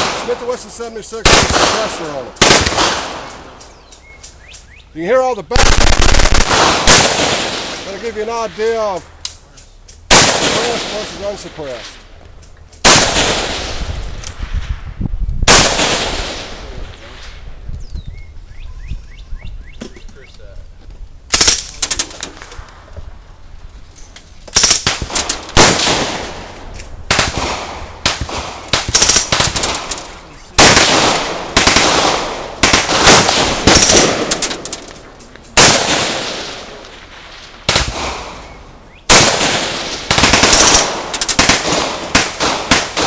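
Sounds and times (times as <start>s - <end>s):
submachine gun bursts: 28.8s - 31.9s, 40.2s - 41.6s.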